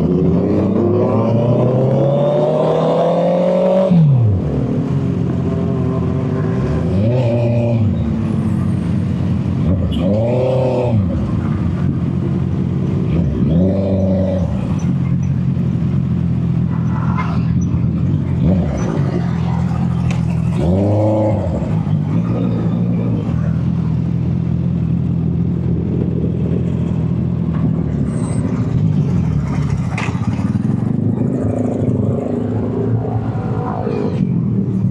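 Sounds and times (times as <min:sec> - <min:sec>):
motorcycle engine revving: 0:00.0 - 0:16.8, 0:17.5 - 0:34.9.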